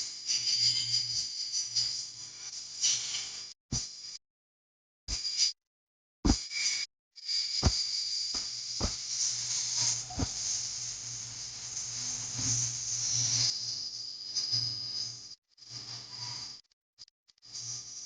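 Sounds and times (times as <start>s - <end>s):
deep thumps: 8.4s - 9.0s.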